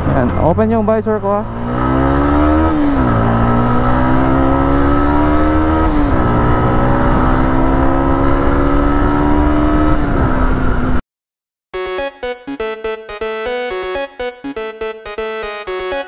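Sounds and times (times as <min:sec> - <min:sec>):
motorcycle engine accelerating: 0:00.0 - 0:11.0.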